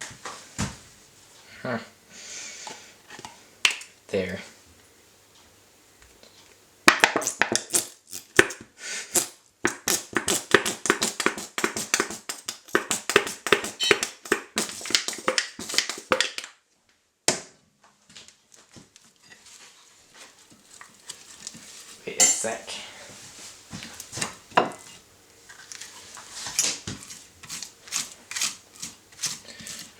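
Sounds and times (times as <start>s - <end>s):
utensil tapping against a dish: 9.7s - 16.4s.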